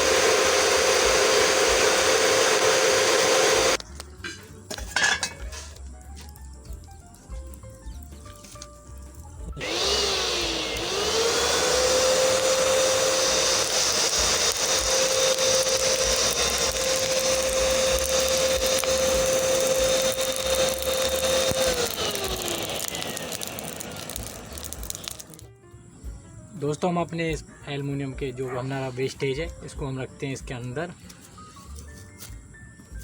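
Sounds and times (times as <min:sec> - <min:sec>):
air compressor motor whining: 0:00.0 - 0:03.8, 0:09.5 - 0:25.4.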